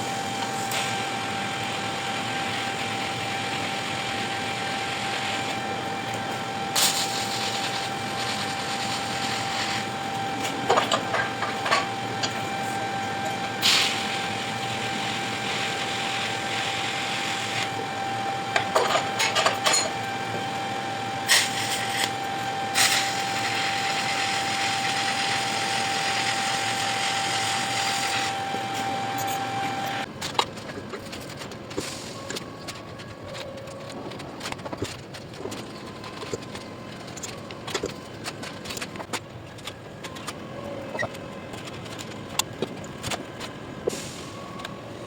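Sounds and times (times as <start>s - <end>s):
bench grinder motor whine: 0.0s - 30.1s.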